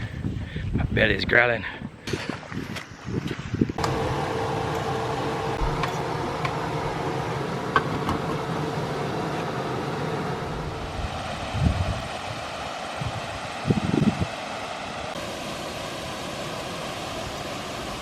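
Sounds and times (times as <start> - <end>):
vehicle running noise: 3.8 - 12.0
low thump: 5.6 - 6.0.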